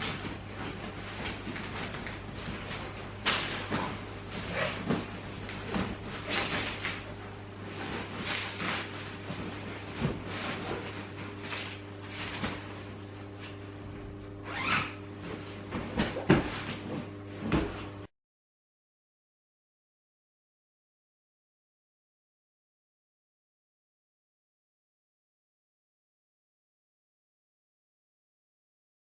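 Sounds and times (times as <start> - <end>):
scraping and rustling handling: 0.0 - 18.1.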